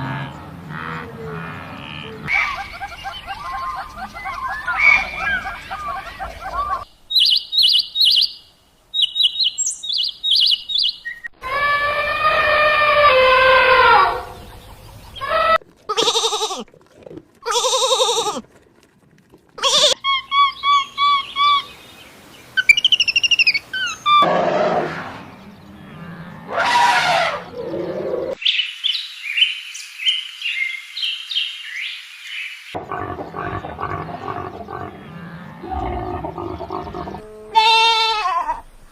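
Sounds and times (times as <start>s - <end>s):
wavering bleat-like calls: 0.0s - 2.3s, 17.4s - 18.4s, 33.4s - 38.7s.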